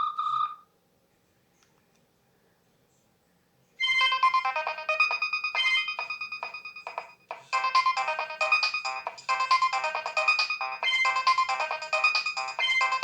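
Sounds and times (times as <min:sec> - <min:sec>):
phone ringtone melody: 0:03.8 - 0:13.0.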